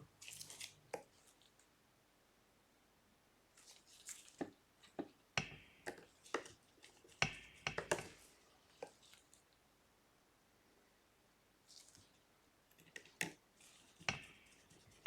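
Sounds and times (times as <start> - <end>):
small tools clicking on phone: 7.2 - 8.2.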